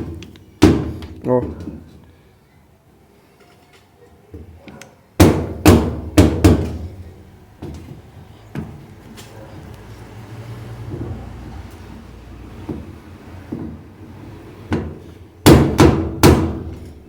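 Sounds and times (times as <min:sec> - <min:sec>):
loud sharp knocks: 0:00.0 - 0:01.1, 0:05.2 - 0:07.0, 0:14.7 - 0:16.8.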